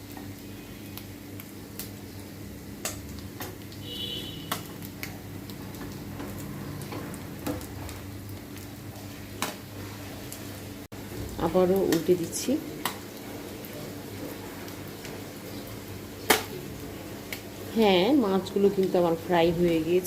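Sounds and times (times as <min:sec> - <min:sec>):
fish sizzling in oil: 0:00.0 - 0:20.0
utensil clicking against pan: 0:02.8 - 0:03.6.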